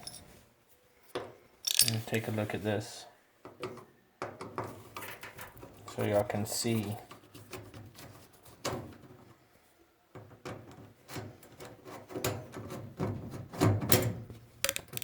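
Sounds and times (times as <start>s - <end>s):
hands handling parts: 1.6s - 2.3s, 14.7s - 15.0s.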